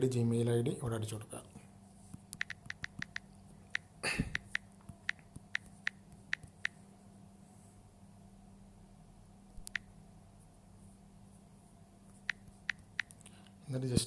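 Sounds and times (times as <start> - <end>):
keyboard keystroke clicks: 2.3 - 6.8, 9.6 - 9.9, 12.3 - 13.2.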